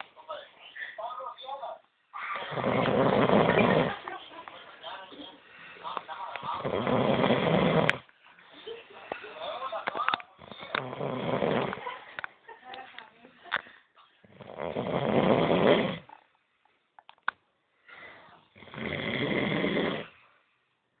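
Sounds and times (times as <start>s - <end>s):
person snoring: 2.4s - 4.0s, 6.5s - 8.0s, 10.4s - 11.8s, 14.3s - 16.1s, 18.6s - 20.2s.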